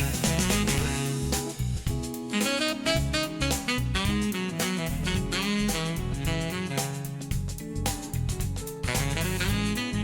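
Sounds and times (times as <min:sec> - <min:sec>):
saxophone lead: 0:00.0 - 0:07.5, 0:08.8 - 0:10.0
bass: 0:00.0 - 0:10.0
drums: 0:00.0 - 0:10.0.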